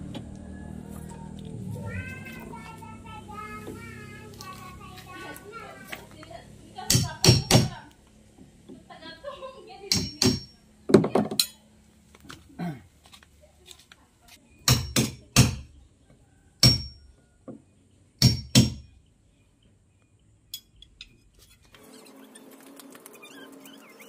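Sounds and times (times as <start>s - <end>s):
hammer strikes with metallic ring: 9.9s - 10.6s, 14.7s - 15.6s, 16.6s - 17.0s, 18.2s - 18.8s.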